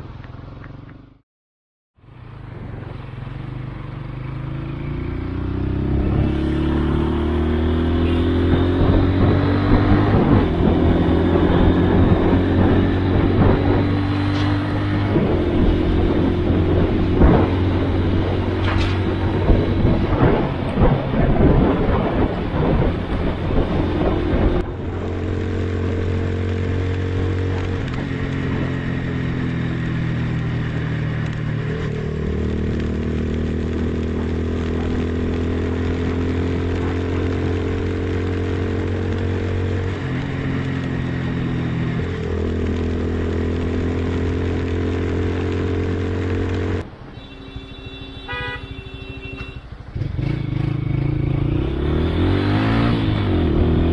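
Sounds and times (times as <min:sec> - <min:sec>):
motorcycle engine running: 0:00.0 - 0:01.2, 0:02.0 - 0:46.8
road noise: 0:00.0 - 0:01.2, 0:02.0 - 0:53.9
wind noise: 0:05.7 - 0:31.6.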